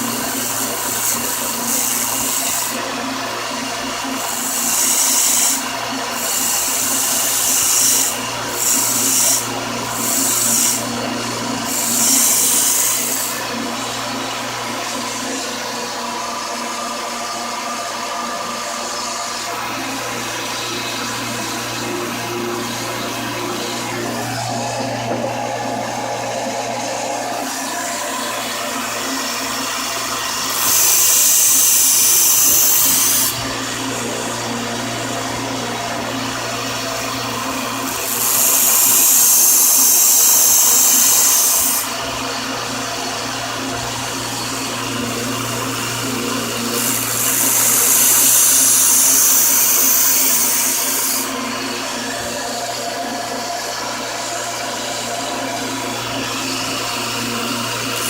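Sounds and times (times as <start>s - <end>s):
grinder motor running: 0.0s - 58.0s
knife grinding hiss: 4.3s - 5.6s.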